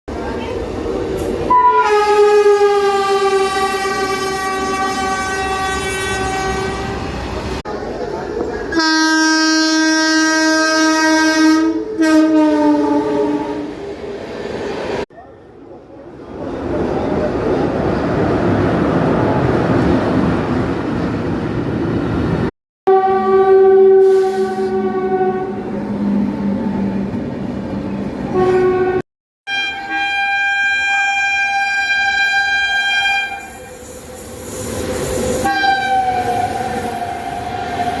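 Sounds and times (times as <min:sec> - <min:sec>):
locomotive horn blast: 0:01.5 - 0:07.4, 0:08.7 - 0:13.8, 0:22.9 - 0:25.8, 0:28.3 - 0:33.8, 0:35.4 - 0:38.0.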